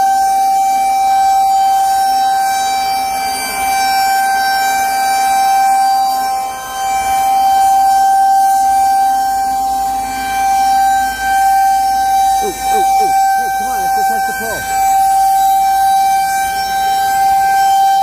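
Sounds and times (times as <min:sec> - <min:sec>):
warning siren steady tone: 0:00.0 - 0:18.0.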